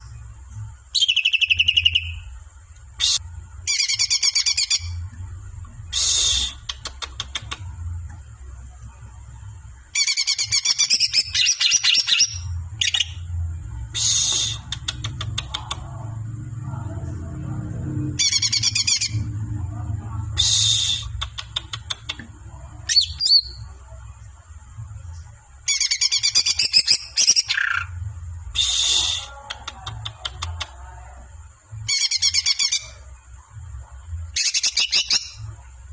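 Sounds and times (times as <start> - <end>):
songbird trilling: 1.0 - 2.2.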